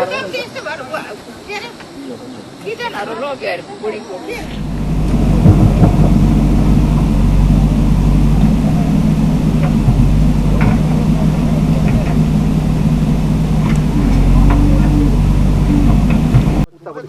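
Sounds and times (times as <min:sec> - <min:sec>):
bulldozer diesel engine running: 0:04.3 - 0:16.7.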